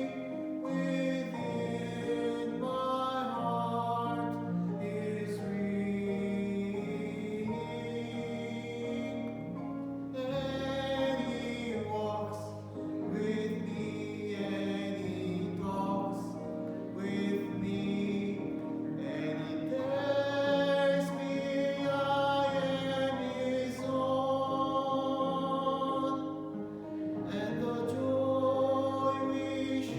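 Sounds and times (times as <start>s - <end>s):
voices singing a hymn: 0.0s - 29.9s.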